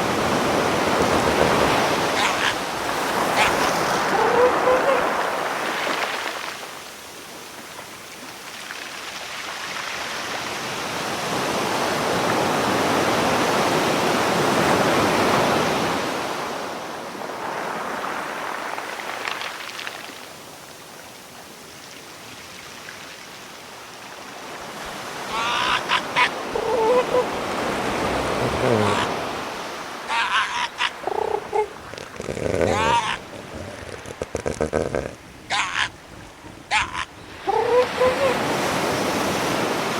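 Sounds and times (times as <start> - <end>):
rushing water: 0.0 - 39.9
short pitched animal calls: 2.2 - 2.6, 3.3 - 5.1, 25.3 - 29.3, 30.1 - 36.0, 36.7 - 38.4.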